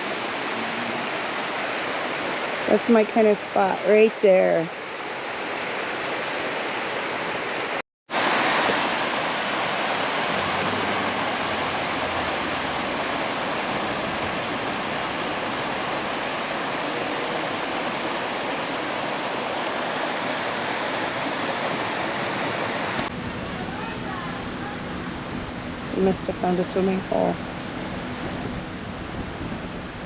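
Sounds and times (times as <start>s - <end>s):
stream rushing over rocks: 0.0s - 23.1s.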